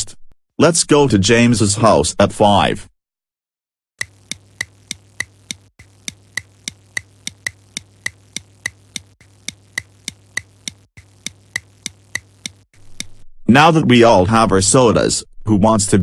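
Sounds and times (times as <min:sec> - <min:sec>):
sharp evenly spaced clicks: 0:04.0 - 0:13.2.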